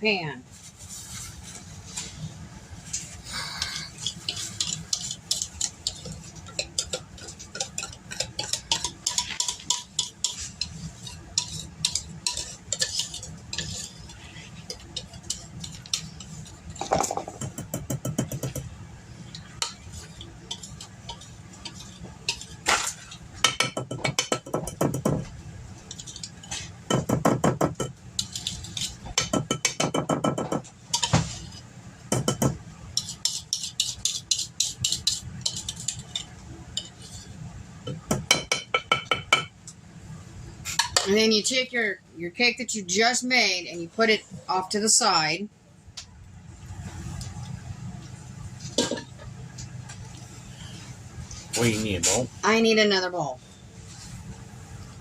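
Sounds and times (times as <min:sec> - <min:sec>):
utensil scraping a mixing bowl: 0:04.0 - 0:18.6.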